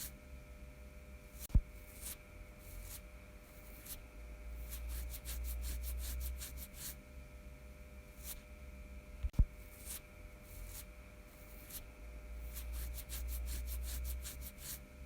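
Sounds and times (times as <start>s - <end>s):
fingernails scratching hairy skin: 1.9s - 4.0s, 4.6s - 7.0s, 9.7s - 14.8s.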